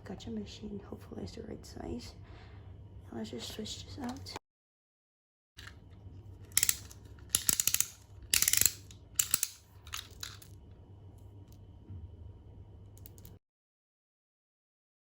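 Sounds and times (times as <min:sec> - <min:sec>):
plastic pieces clicking and clattering: 0:06.5 - 0:10.5.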